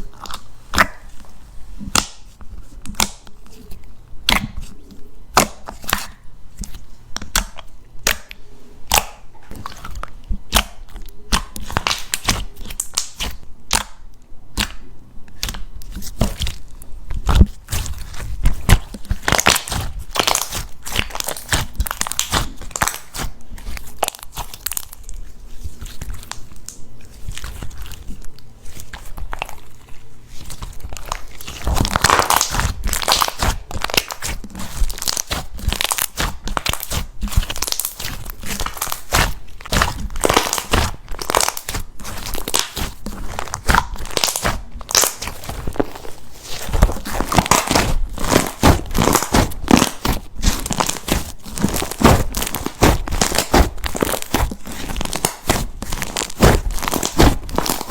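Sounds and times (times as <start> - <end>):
slime clicking and popping: 5.3 - 9.2, 10.5 - 14.8, 31.0 - 46.0, 46.6 - 57.9.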